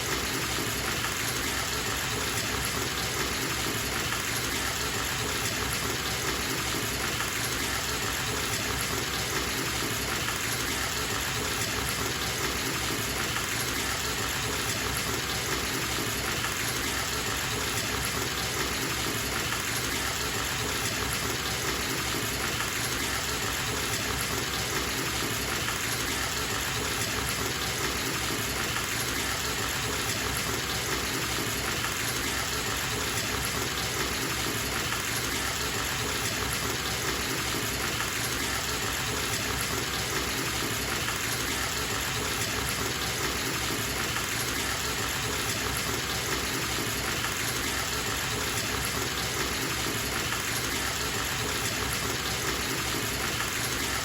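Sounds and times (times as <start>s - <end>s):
water gushing from a tap into bathtub: 0.0s - 54.0s.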